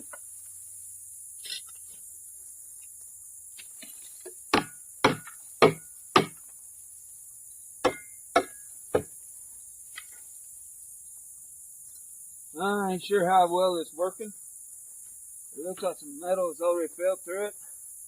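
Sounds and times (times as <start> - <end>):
insect hiss: 0.0 - 18.0
sharp metallic knocks: 4.5 - 6.4, 7.8 - 9.1.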